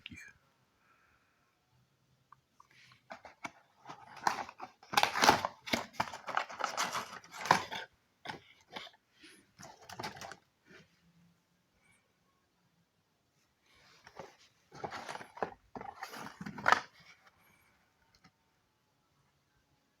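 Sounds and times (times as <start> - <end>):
packaging crinkling and rustling: 3.1 - 9.0, 9.6 - 10.4, 14.1 - 17.2.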